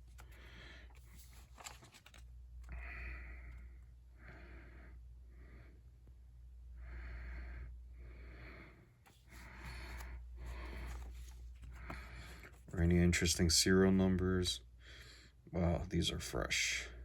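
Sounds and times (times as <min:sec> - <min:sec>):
paper bills clicking: 0:00.0 - 0:02.8
person breathing: 0:00.1 - 0:01.4, 0:02.6 - 0:05.9, 0:06.8 - 0:12.7, 0:14.8 - 0:15.4.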